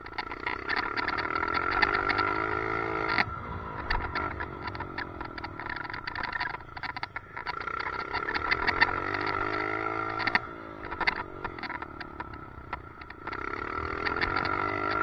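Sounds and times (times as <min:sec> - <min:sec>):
dirt bike engine revving: 0:00.0 - 0:15.0
helmet mount rattling clicks: 0:03.1 - 0:09.5, 0:10.1 - 0:13.4.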